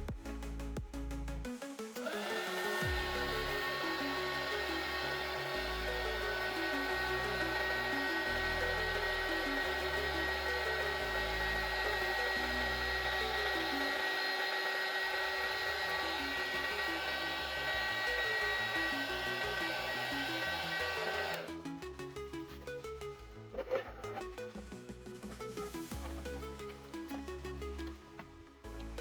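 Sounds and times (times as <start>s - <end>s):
background music with bass line: 0.0s - 2.0s, 2.7s - 13.8s, 17.6s - 29.0s
small electric motor whirring: 2.1s - 21.5s.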